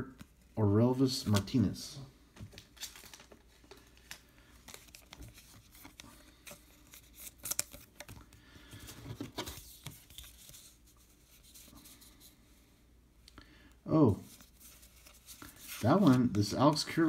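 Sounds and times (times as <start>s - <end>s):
trading cards being flipped: 2.4s - 8.4s
paper crinkle: 2.4s - 12.2s, 14.2s - 17.0s.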